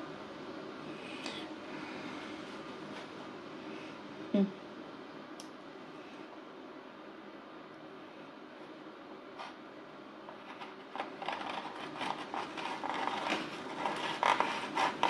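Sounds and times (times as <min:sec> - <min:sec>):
utensils clicking and scraping: 0:10.3 - 0:15.0.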